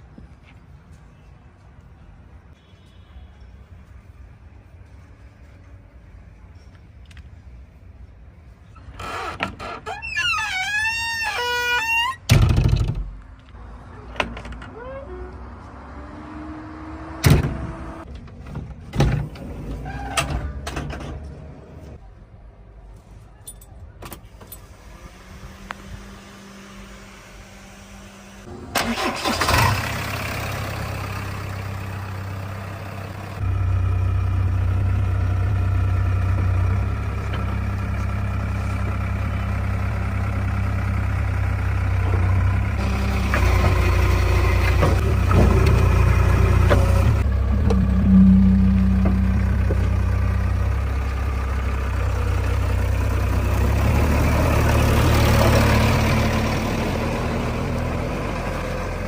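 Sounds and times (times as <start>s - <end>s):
diesel engine running: 24.6s - 59.0s.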